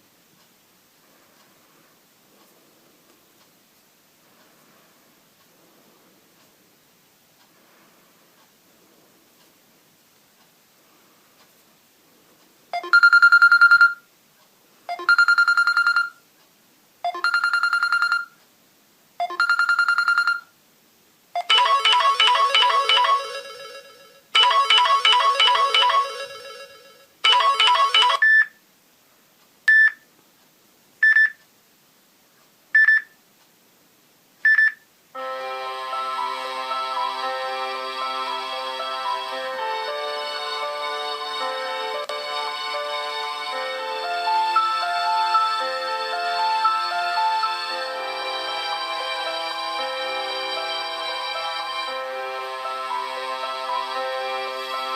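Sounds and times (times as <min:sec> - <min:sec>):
musical ringtone: 0:12.8 - 0:14.0, 0:14.9 - 0:16.1, 0:17.1 - 0:18.3, 0:19.2 - 0:20.4, 0:21.4 - 0:28.4, 0:35.2 - 0:54.9
bright melodic phrases: 0:21.5 - 0:28.2, 0:35.2 - 0:54.9.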